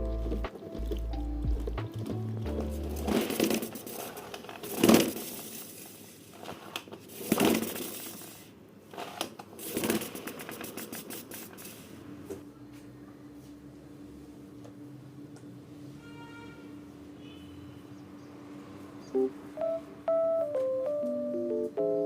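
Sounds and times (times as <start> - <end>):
objects rustling and scraping: 0.1 - 12.0.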